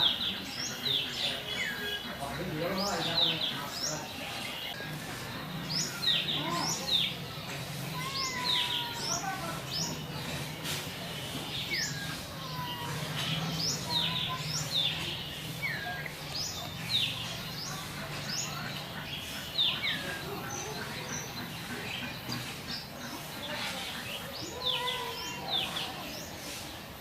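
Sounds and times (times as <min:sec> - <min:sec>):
small birds chirping: 0:00.0 - 0:27.0.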